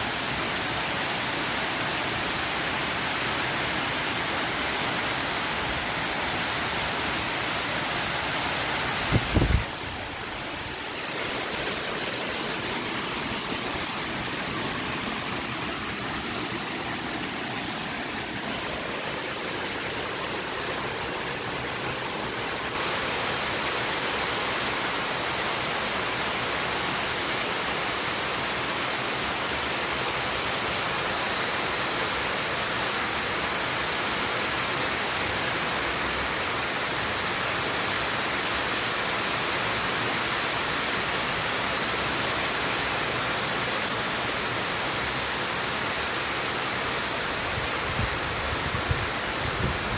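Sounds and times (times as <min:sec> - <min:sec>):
low thump of wind on microphone: 0:09.0 - 0:10.2, 0:47.8 - 0:49.9
strong wind rushing: 0:09.0 - 0:10.8.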